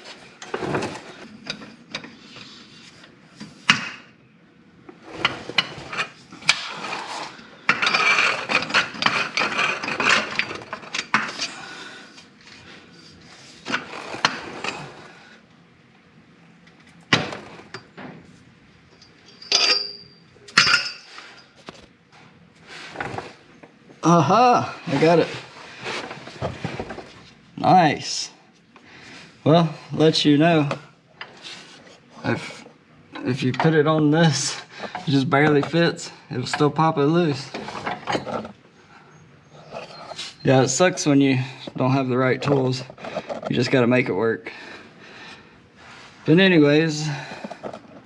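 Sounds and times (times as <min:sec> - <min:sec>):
metal tools clanking and scraping: 0:00.4 - 0:03.8, 0:05.0 - 0:11.7, 0:13.0 - 0:15.1, 0:18.9 - 0:21.8, 0:33.2 - 0:43.8, 0:47.0 - 0:48.0
ringing metal clinks: 0:19.0 - 0:21.5.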